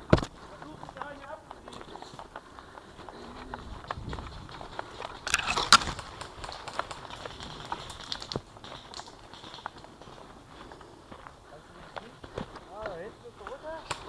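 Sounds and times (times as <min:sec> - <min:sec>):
twigs and leaves crackling: 0:00.0 - 0:14.0
twig cracking sharply: 0:05.2 - 0:06.8.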